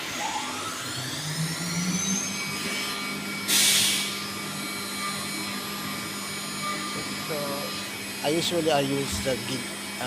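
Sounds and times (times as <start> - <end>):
high whining tones: 0.0 - 9.8
milling machine hum: 0.0 - 10.0
burst of hiss: 3.5 - 4.1.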